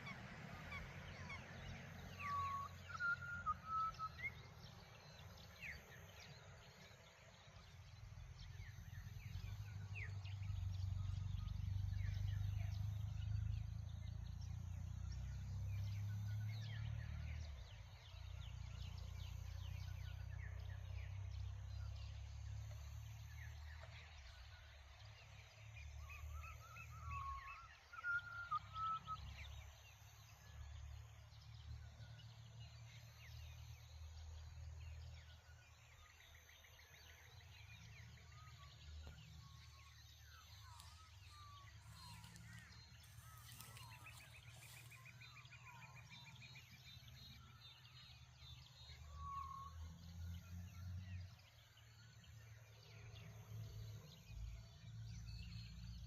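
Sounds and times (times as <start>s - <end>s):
birds whistling and trilling: 2.0s - 6.4s, 25.9s - 30.6s, 33.1s - 56.0s.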